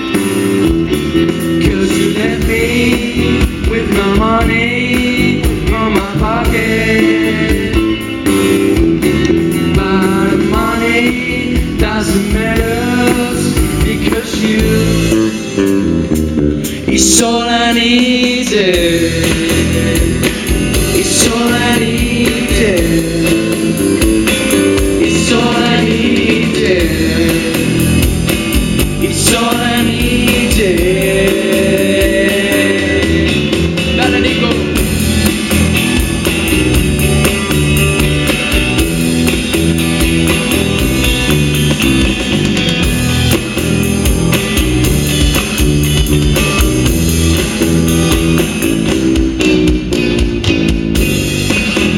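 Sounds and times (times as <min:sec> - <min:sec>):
guitar: 0:00.0 - 0:51.9
steady backing music: 0:00.0 - 0:51.9
person singing: 0:01.2 - 0:08.4, 0:09.5 - 0:15.6, 0:16.6 - 0:28.2, 0:28.8 - 0:35.0.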